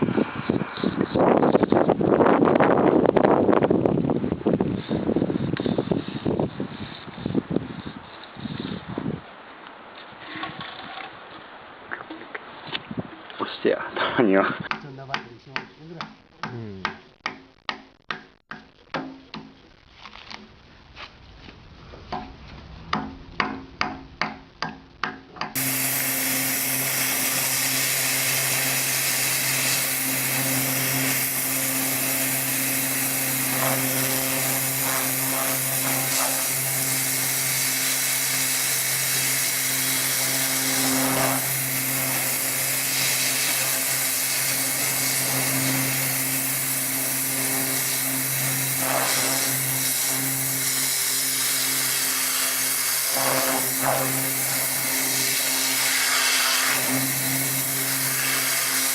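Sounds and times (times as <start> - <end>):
sharp knocks: 14.7 - 19.6, 22.9 - 25.6
woodworking power tool running: 25.6 - 58.9.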